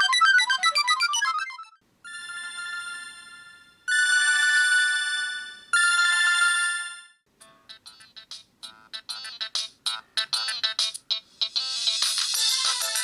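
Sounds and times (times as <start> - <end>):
held synth chords: 0.0 - 1.8
polyphonic ringtone melody: 0.0 - 6.4.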